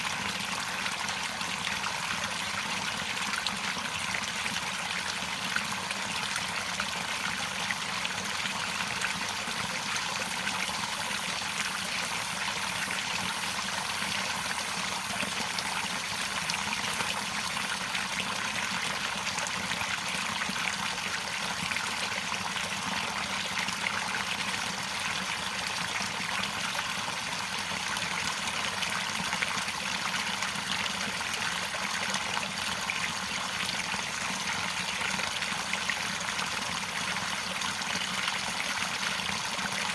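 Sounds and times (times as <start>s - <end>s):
running water trickling: 5.9s - 20.4s.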